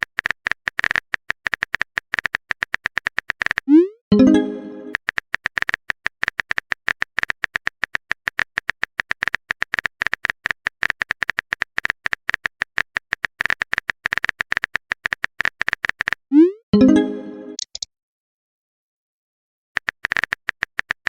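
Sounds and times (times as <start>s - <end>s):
phone keyboard typing clicks: 0.0s - 16.2s, 17.5s - 17.9s
message alert tone: 3.7s - 5.0s, 16.3s - 17.7s.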